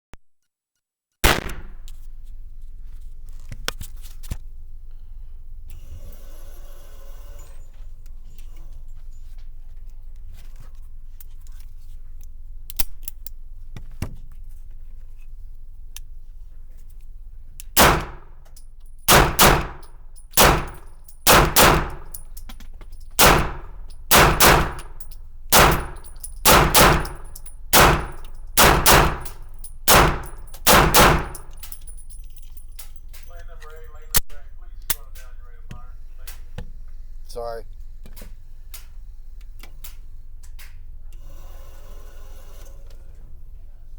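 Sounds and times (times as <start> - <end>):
gunshots in quick pairs: 1.2 - 1.9, 17.8 - 18.3, 19.1 - 22.1, 23.2 - 27.2, 27.8 - 31.5.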